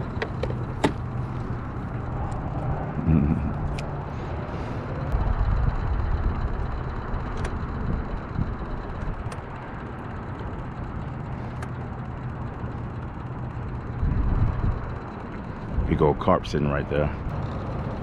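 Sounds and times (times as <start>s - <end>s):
low rumbles: 0.0s - 18.0s.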